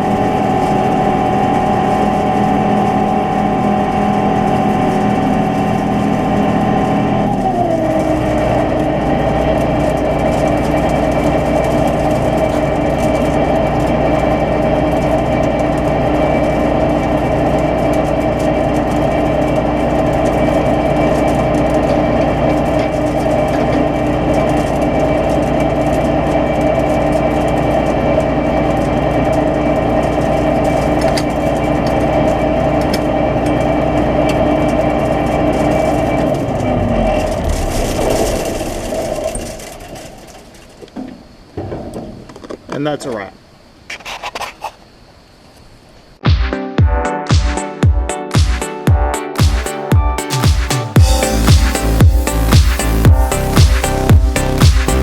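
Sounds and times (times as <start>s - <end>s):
combine harvester running: 0.0s - 43.7s, 49.0s - 55.0s.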